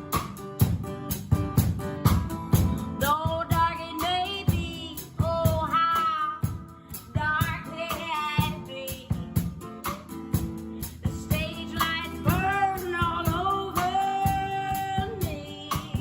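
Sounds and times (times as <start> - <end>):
steady beat: 0.0 - 5.7
guitar accompaniment: 0.0 - 16.0
woman singing: 3.0 - 9.6, 10.9 - 16.0.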